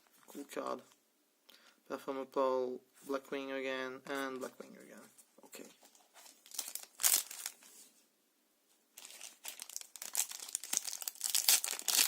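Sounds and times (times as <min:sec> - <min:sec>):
foil wrapper crinkling: 0:06.1 - 0:07.7, 0:09.0 - 0:12.0.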